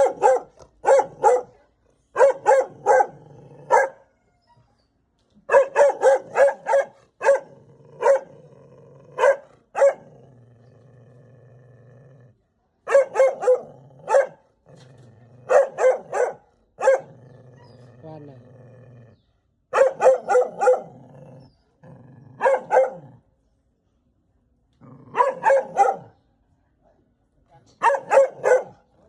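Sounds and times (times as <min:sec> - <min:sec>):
dog barking: 0:00.0 - 0:04.1, 0:05.5 - 0:08.4, 0:09.2 - 0:10.1, 0:12.8 - 0:14.5, 0:15.5 - 0:17.8, 0:19.7 - 0:21.0, 0:22.4 - 0:23.2, 0:25.1 - 0:26.2, 0:27.8 - 0:28.9
dog growling: 0:02.8 - 0:03.8, 0:07.4 - 0:12.4, 0:13.4 - 0:15.8, 0:17.0 - 0:19.3, 0:20.6 - 0:23.3, 0:24.8 - 0:25.4.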